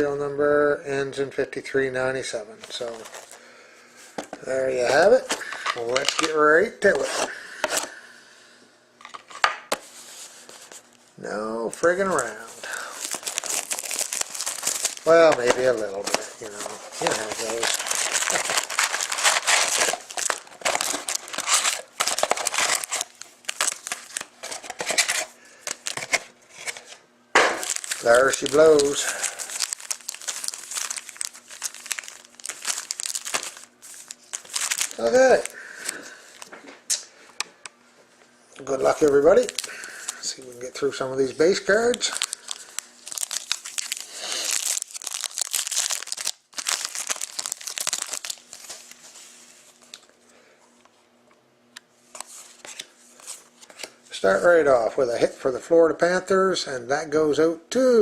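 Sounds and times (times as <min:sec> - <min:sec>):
plastic shrink-wrap tearing: 0:12.7 - 0:26.2, 0:27.6 - 0:36.5, 0:38.8 - 0:40.4, 0:41.4 - 0:49.0.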